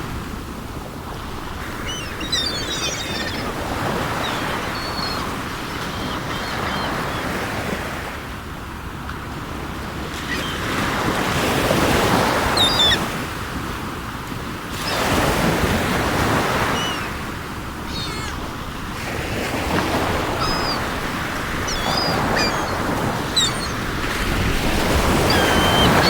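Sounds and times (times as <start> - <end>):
sea waves washing in: 0.0 - 26.0
gull cries: 1.6 - 7.7, 10.2 - 11.1, 11.9 - 13.2, 14.8 - 26.0.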